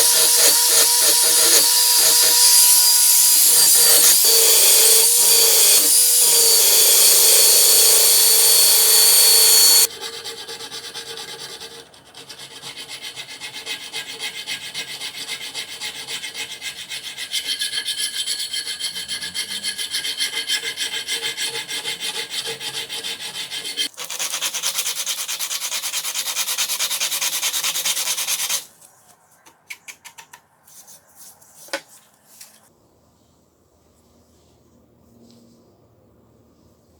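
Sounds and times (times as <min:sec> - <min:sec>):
power tool running: 0:00.0 - 0:09.9.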